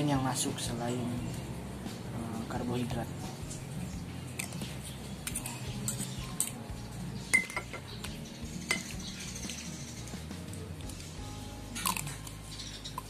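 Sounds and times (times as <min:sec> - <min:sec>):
cutlery clinking against a dish: 0:05.2 - 0:06.6, 0:07.3 - 0:07.9, 0:08.7 - 0:08.9.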